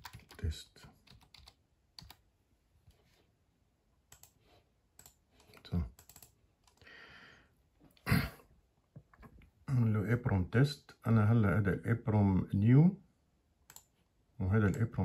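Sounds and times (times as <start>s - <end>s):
keyboard and mouse clicks: 0.0s - 2.2s, 4.1s - 4.4s, 5.0s - 6.8s, 13.7s - 14.0s.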